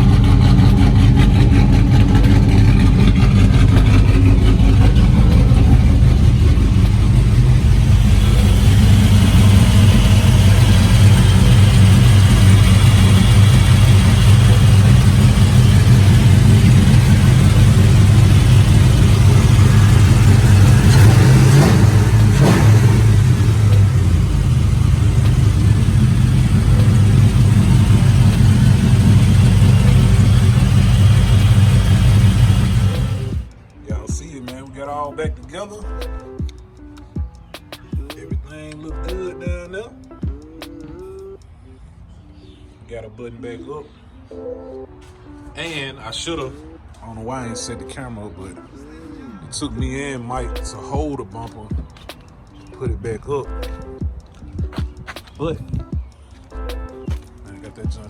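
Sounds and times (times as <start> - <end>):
truck engine idling: 0.0 - 33.5.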